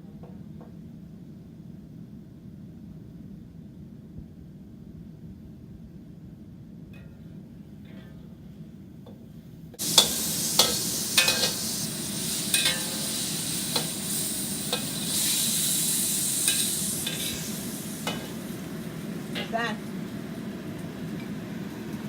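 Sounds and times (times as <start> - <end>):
food sizzling in a wok: 9.8 - 22.0
spatula scraping a wok: 9.9 - 15.6.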